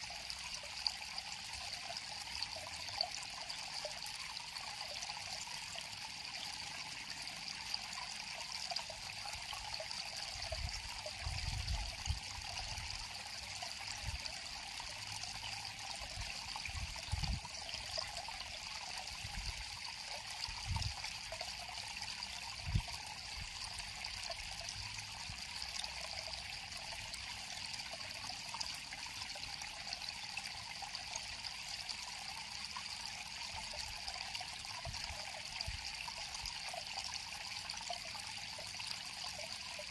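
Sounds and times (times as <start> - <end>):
river water babbling: 12.4 - 39.9.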